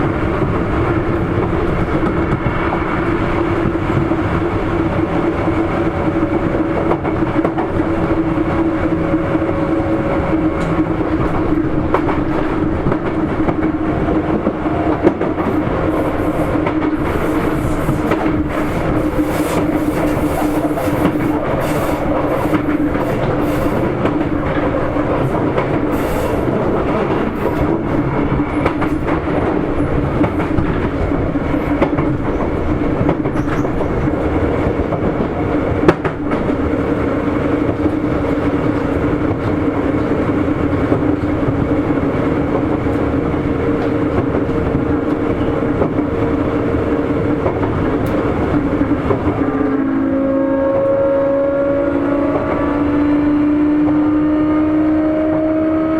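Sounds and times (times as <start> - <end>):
wheels rumbling on rail: 0.0 - 55.9
rail-joint clicks: 5.2 - 9.0, 10.2 - 49.4.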